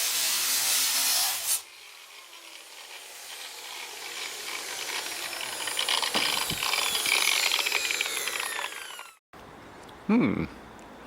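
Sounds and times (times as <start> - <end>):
angle grinder cutting sheet metal: 0.0 - 9.2.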